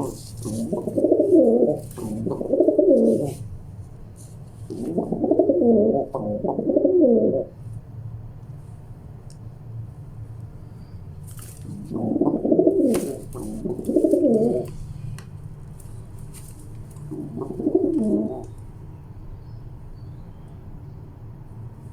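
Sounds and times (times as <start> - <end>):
pigeons cooing: 0.0 - 3.4, 4.7 - 7.5, 11.7 - 14.7, 17.1 - 18.6.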